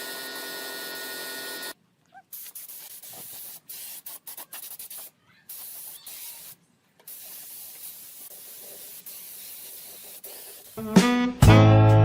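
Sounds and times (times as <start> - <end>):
short bursts of hiss: 2.3 - 11.0.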